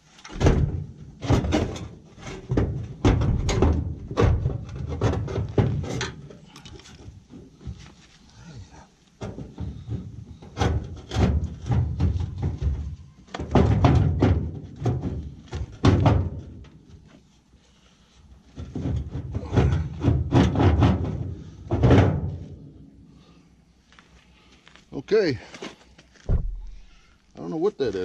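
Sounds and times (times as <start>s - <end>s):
heavy thuds against sheet metal: 13.4s - 16.6s, 18.7s - 22.4s, 26.3s - 27.1s.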